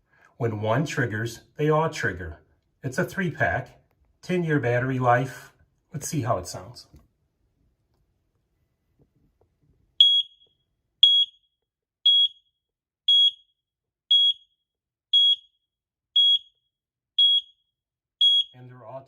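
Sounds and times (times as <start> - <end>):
smoke alarm beeping: 10.0 - 18.7.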